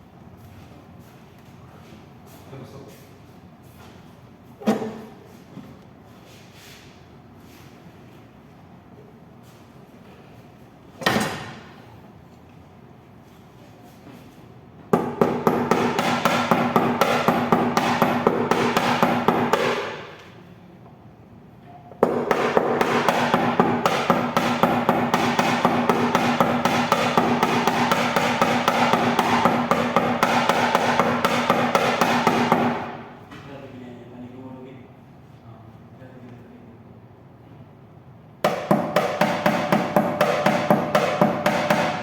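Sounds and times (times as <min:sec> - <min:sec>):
hammer tapping on sheet metal: 0:14.9 - 0:20.2, 0:22.0 - 0:33.0, 0:38.4 - 0:42.0.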